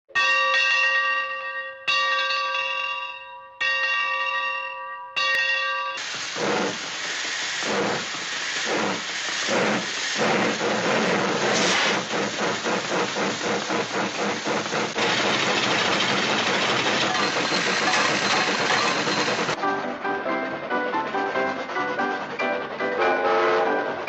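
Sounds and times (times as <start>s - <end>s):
steam locomotive chuffing: 6.0s - 24.0s
bell ringing: 15.5s - 19.6s.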